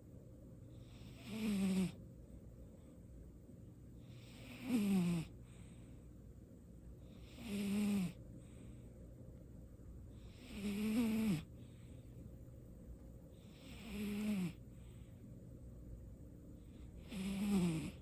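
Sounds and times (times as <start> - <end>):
cat snoring: 0.8 - 2.0, 4.0 - 5.8, 7.0 - 8.6, 10.2 - 11.7, 13.4 - 14.9, 17.0 - 18.0
cat breathing softly: 5.3 - 6.2.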